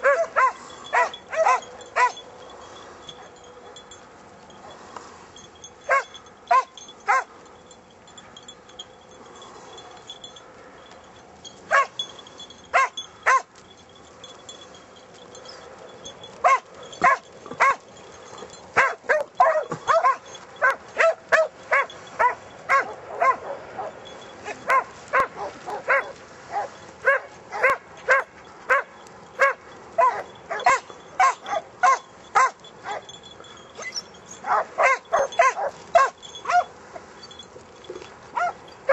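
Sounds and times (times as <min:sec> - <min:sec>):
dog barks: 0:00.0 - 0:02.2, 0:05.9 - 0:07.3, 0:11.7 - 0:11.9, 0:12.8 - 0:13.5, 0:16.4 - 0:17.8, 0:18.8 - 0:33.1, 0:33.8 - 0:36.7, 0:38.4 - 0:38.9
hounds baying: 0:00.0 - 0:04.8, 0:05.8 - 0:07.5, 0:11.6 - 0:38.9.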